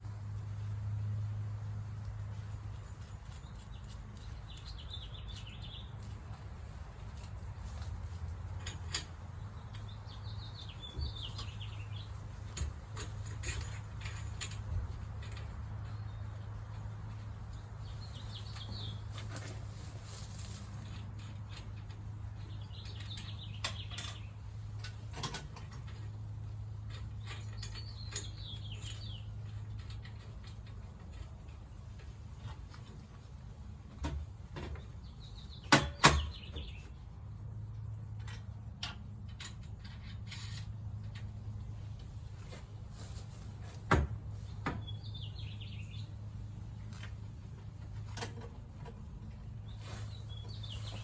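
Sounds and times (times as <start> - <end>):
birds chirping: 2.3 - 6.4, 7.1 - 13.1, 15.2 - 19.6, 20.3 - 24.6, 26.9 - 32.4, 34.5 - 37.7, 44.4 - 47.1, 49.2 - 51.0
sharp knocks and clicks: 35.6 - 36.8.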